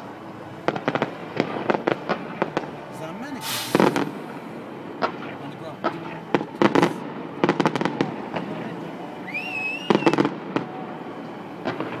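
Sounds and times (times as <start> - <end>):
fireworks bangs and crackles: 0.0 - 12.0
firework whistle: 3.4 - 4.1, 9.2 - 12.0.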